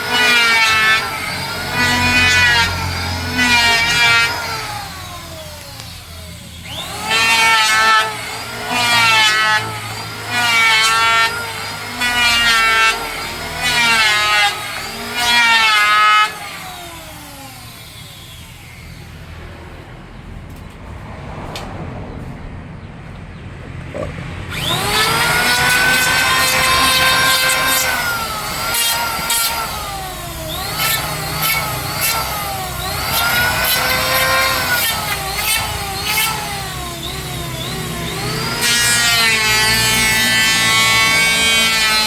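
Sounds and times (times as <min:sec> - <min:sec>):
electric planer cutting wood: 0:00.0 - 0:19.6, 0:23.9 - 0:42.0.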